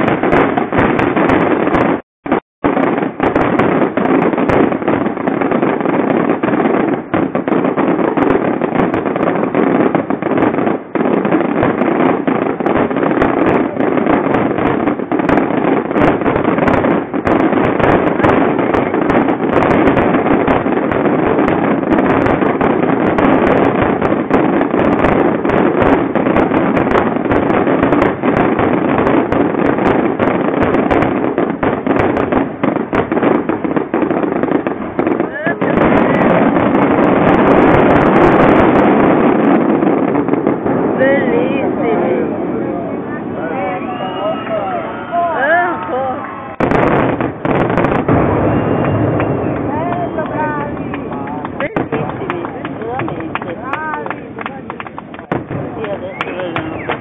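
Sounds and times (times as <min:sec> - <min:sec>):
fireworks crackles and bangs: 0:00.0 - 0:57.0.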